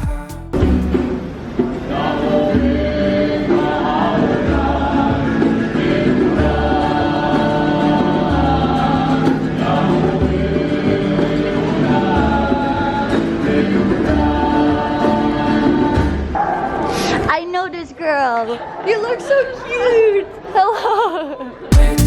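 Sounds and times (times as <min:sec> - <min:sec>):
repeating bass notes: 0:00.0 - 0:01.2, 0:21.8 - 0:22.0
choir-like singing: 0:00.0 - 0:17.3, 0:21.7 - 0:22.0.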